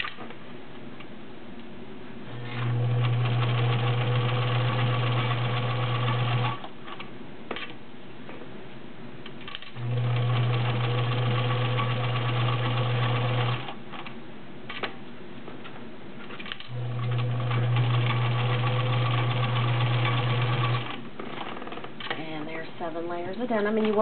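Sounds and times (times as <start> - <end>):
sewing machine stitching: 2.3 - 6.7, 9.5 - 13.8, 16.4 - 21.8.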